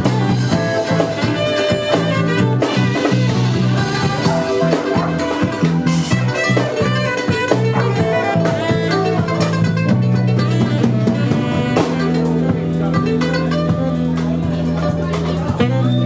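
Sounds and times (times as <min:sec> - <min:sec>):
drum kit: 0:00.0 - 0:16.0
guitar: 0:00.0 - 0:16.0
live band playing instrumental: 0:00.0 - 0:16.0.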